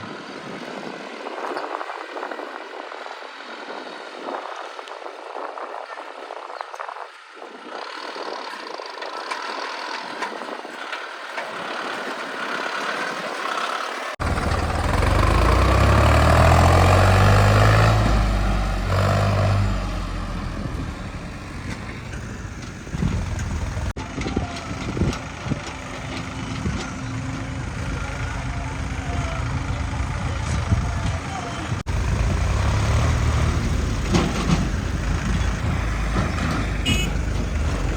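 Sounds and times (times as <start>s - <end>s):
diesel engine running: 11.8s - 37.9s.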